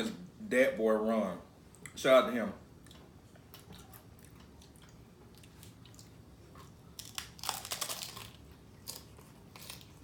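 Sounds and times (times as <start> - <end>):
taco shell crunching: 3.5 - 10.0.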